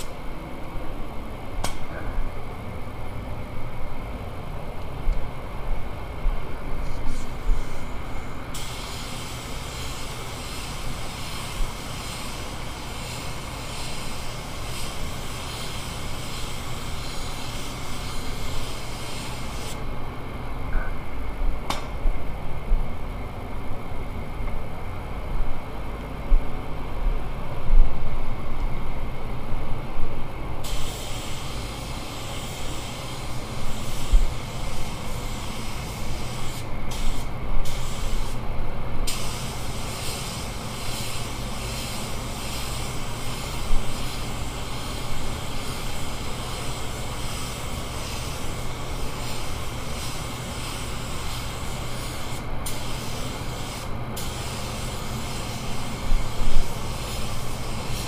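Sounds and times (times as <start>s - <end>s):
steady low hum: 0.0s - 58.0s
spray gun hissing: 6.9s - 19.8s, 30.6s - 38.4s, 39.1s - 58.0s.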